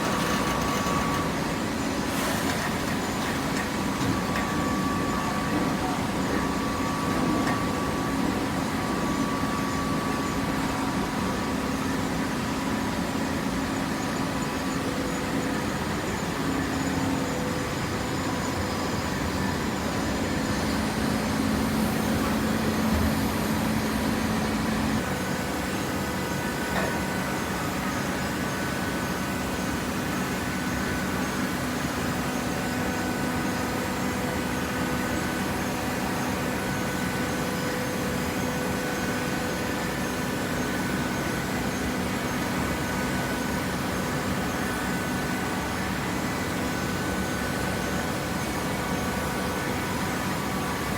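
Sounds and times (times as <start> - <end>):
industrial machinery humming: 0.0 - 50.9.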